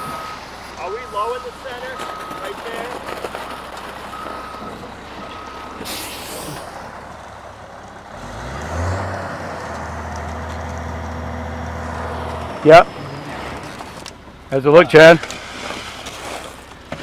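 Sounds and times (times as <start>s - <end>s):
backup beeper: 0.0s - 3.2s, 4.0s - 6.1s
diesel engine revving: 0.0s - 16.1s.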